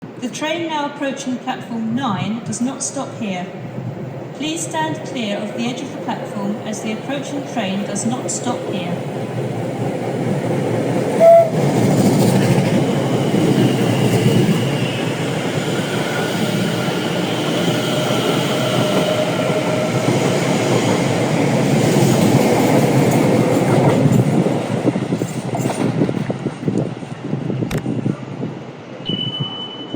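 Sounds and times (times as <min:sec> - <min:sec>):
train wheels rumbling on rails: 0:02.1 - 0:29.9
train horn: 0:11.2 - 0:11.6.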